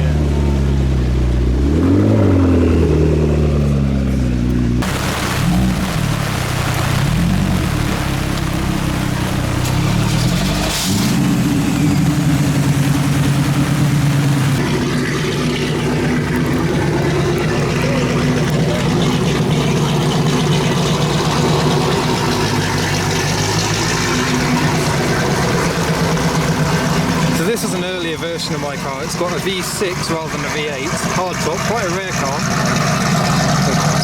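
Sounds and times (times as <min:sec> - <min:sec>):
car engine running: 0:00.0 - 0:34.0.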